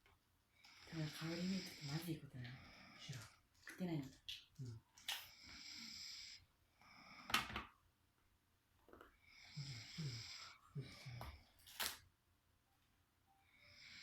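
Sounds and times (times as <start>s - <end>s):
person snoring: 0.7s - 3.3s, 5.3s - 7.3s, 9.3s - 11.5s, 13.5s - 14.0s.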